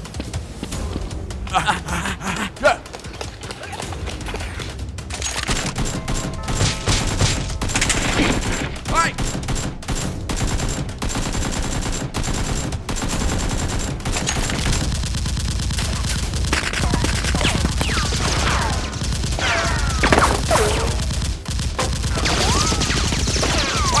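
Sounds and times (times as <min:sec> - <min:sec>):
rapid gunfire: 0:09.2 - 0:14.3, 0:21.0 - 0:23.9.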